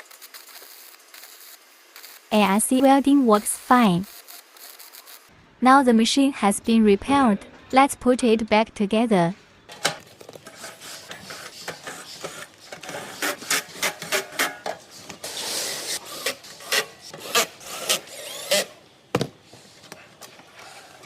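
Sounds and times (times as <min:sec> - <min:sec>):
rubbing and scraping: 0:09.7 - 0:18.7.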